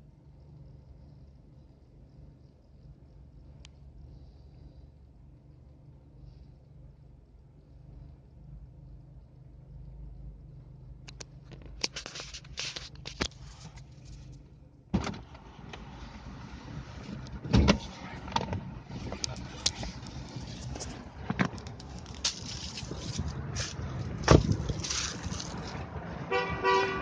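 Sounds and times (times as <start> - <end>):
car engine hum: 0.0 - 27.0
engine knocks and clicks: 9.8 - 15.9, 17.0 - 26.2.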